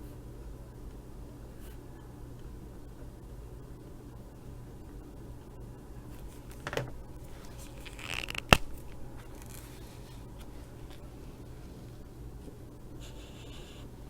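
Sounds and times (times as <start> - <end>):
marker scraping paper: 7.2 - 11.1, 13.0 - 13.9.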